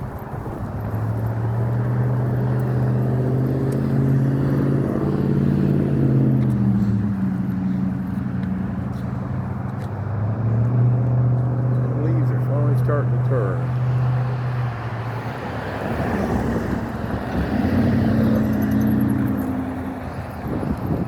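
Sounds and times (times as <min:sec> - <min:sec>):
vehicle engine passing: 0:00.0 - 0:21.0.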